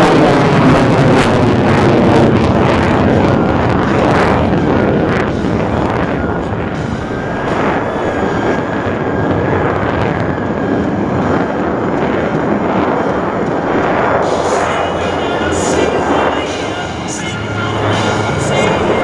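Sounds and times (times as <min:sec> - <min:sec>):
aircraft engine rushing: 0:00.0 - 0:19.0
faint steady whine: 0:00.0 - 0:19.0.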